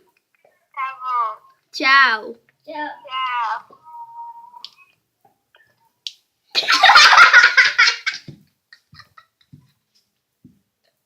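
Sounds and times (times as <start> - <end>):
children laughing loudly: 6.6 - 9.5.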